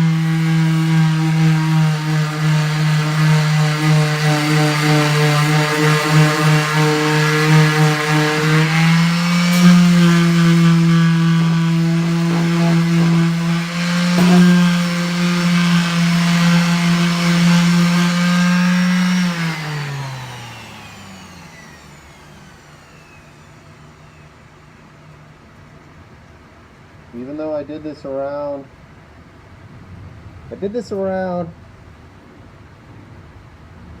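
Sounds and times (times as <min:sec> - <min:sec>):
electric sander motor whine: 0:00.0 - 0:25.2.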